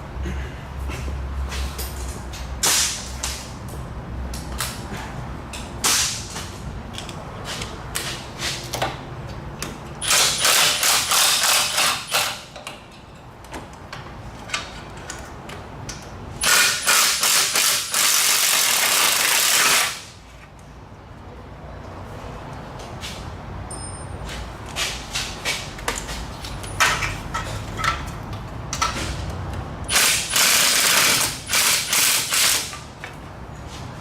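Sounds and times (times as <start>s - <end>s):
hand tools clanking on metal: 23.7s - 29.2s
power tool rattling: 29.9s - 32.8s.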